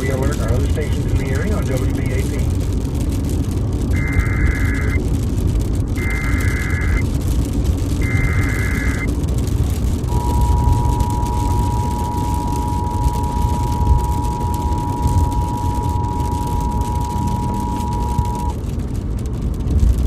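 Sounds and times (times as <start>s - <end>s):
low rumbling noise: 0.0s - 20.0s
digital data burst screech: 8.0s - 9.1s
two-tone alert signal: 8.0s - 9.1s, 10.1s - 18.6s.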